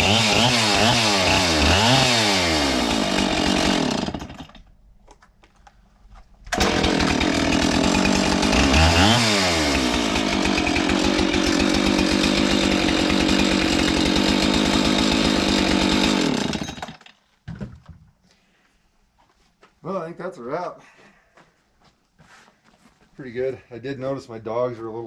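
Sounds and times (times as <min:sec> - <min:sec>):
chainsaw running: 0:00.0 - 0:04.6, 0:06.5 - 0:17.2.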